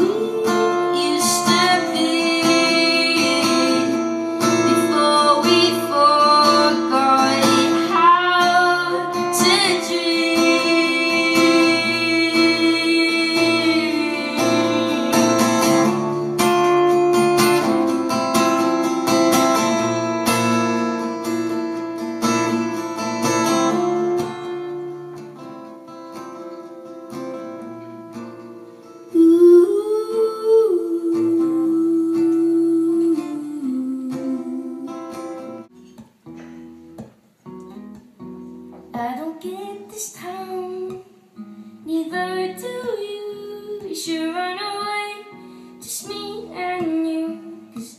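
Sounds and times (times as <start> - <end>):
person singing wavering vocal: 29.2 - 35.1.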